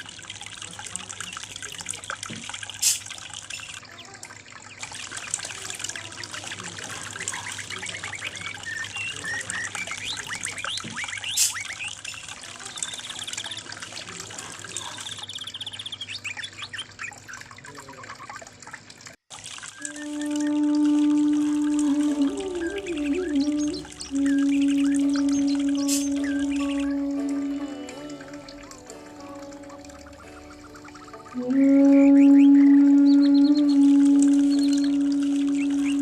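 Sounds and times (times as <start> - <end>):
water trickling and splashing: 0.0 - 36.0.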